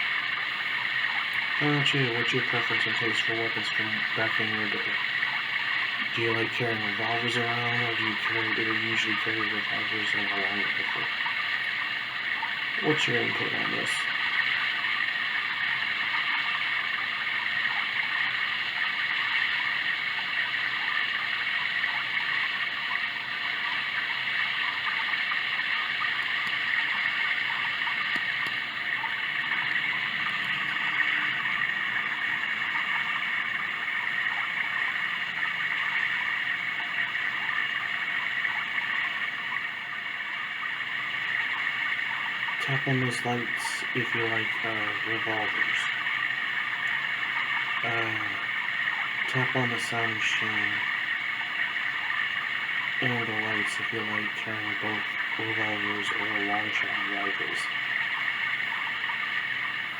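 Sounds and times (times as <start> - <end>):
sound machine rushing water: 0.0 - 59.9.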